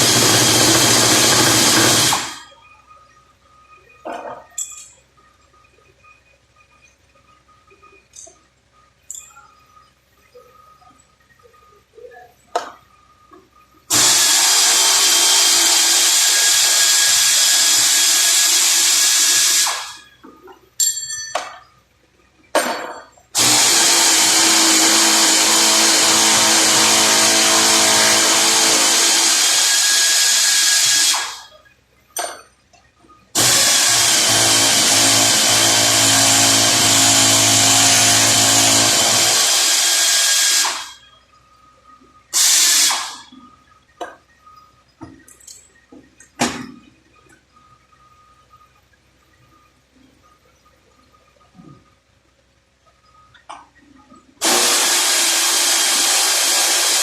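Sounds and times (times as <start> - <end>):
power tool running: 0.0 - 2.5, 13.9 - 20.0, 23.4 - 31.5, 33.4 - 41.0, 42.4 - 43.3, 54.4 - 57.0.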